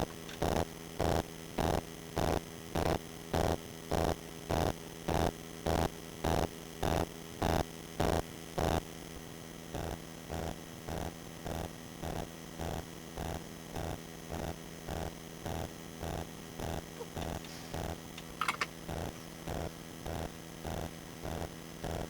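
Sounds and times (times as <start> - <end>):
hot air gun humming and buzzing: 0.0 - 2.3, 9.2 - 22.0.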